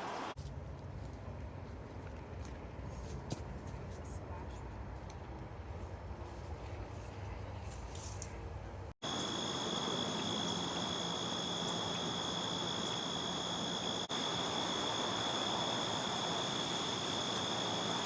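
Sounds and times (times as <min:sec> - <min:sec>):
insects trilling: 0:09.0 - 0:18.0.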